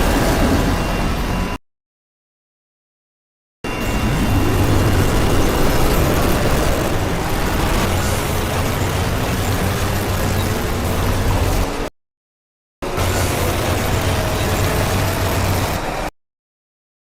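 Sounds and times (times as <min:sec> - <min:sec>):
low hum: 0:03.7 - 0:11.7
harsh static: 0:03.7 - 0:11.9.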